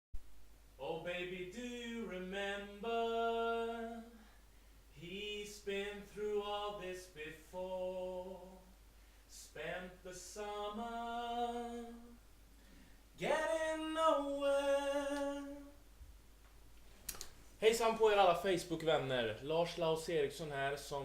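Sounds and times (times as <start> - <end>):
person singing unaccompanied: 0.8 - 4.3, 4.9 - 12.2, 13.2 - 15.8.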